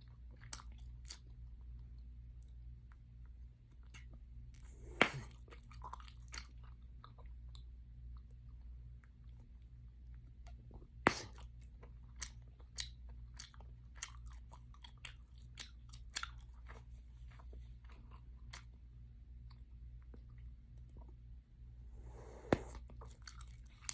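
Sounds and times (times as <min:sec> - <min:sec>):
gum chewing: 0:03.7 - 0:07.7, 0:10.4 - 0:18.8, 0:22.0 - 0:23.9.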